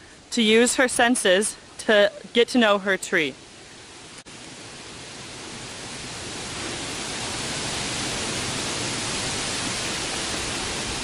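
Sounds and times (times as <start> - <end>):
steady rushing noise: 3.9 - 11.0.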